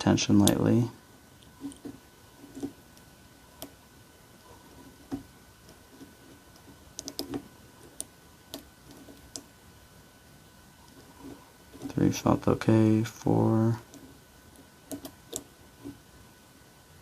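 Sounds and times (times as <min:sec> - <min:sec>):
lock pick clicks and taps: 0:06.9 - 0:07.4.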